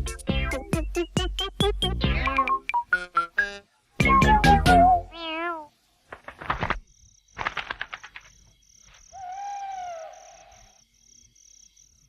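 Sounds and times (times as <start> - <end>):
crickets chirping: 5.1 - 12.0
frogs croaking: 6.8 - 12.0.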